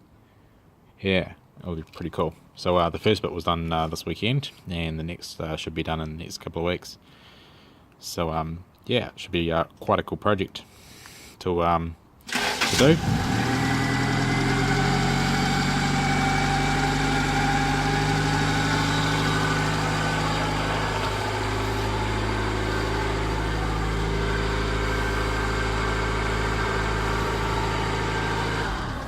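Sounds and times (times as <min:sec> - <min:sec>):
car engine idling: 0:12.3 - 0:29.0.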